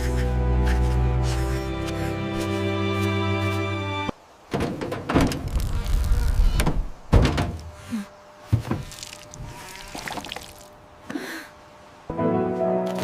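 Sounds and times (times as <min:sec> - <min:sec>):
background music: 0:00.0 - 0:04.2, 0:12.1 - 0:13.0
thuds and knocks: 0:04.5 - 0:05.5, 0:06.6 - 0:07.6.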